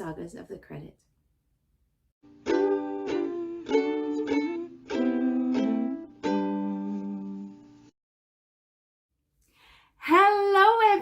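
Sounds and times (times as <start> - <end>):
plucked string instrument strumming: 2.3 - 7.8.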